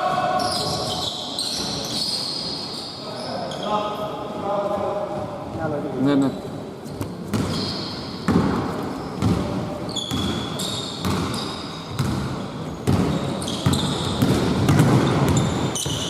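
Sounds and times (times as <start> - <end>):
sneakers squeaking on floor: 0.0 - 4.4, 5.1 - 16.0
basketball dribbling: 12.0 - 16.0.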